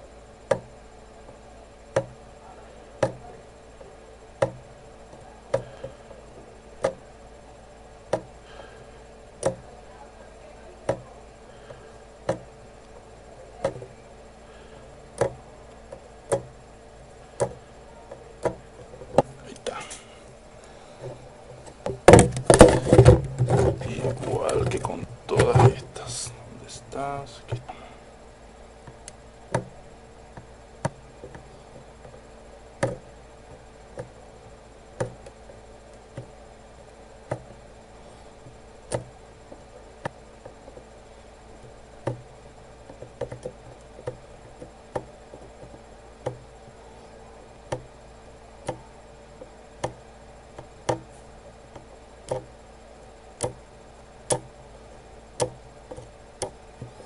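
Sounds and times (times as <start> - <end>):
faint steady hum: 0.0 - 57.0
tools tapping circuit board: 15.2 - 16.6, 42.9 - 46.5, 47.7 - 48.0, 49.4 - 50.0, 50.6 - 52.5, 53.4 - 53.6, 54.3 - 54.5, 55.4 - 57.0.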